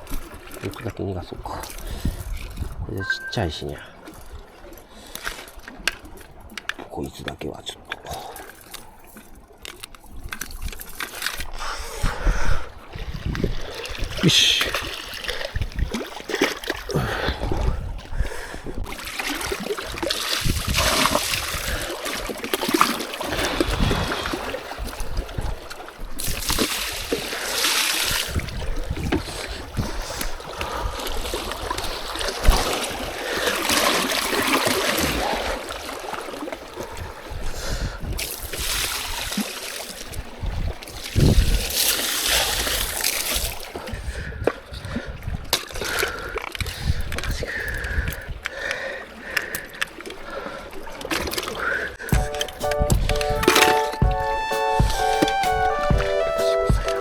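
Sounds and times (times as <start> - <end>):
water splashing and lapping: 0.0 - 57.0
wind buffeting microphone: 1.2 - 3.0, 11.5 - 14.3, 16.9 - 21.9, 23.3 - 27.2, 28.1 - 33.2, 40.1 - 41.8, 43.9 - 48.5, 52.0 - 53.5.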